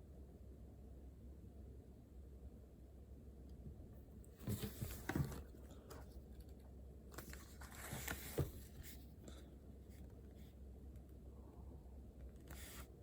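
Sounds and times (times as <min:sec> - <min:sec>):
rustling and knocks of handling: 0:04.3 - 0:09.4.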